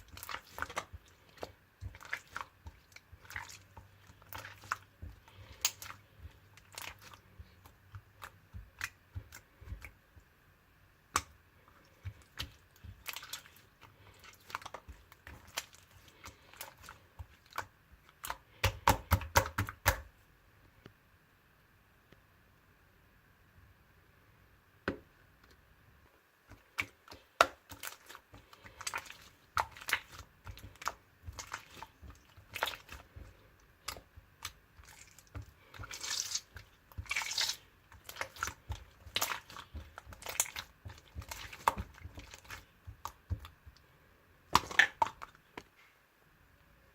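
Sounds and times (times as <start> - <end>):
slime crackling and squishing: 0.0 - 10.1, 11.1 - 20.1, 26.5 - 43.8, 44.5 - 45.6.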